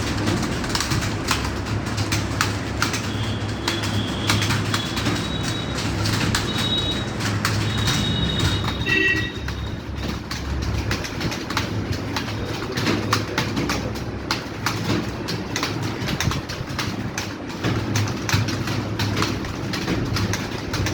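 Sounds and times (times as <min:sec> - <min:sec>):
keyboards clattering: 0:00.0 - 0:20.9.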